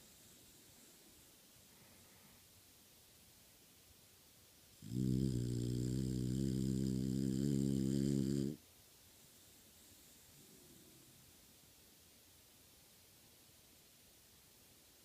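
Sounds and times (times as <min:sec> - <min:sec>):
person snoring: 0:04.8 - 0:08.6.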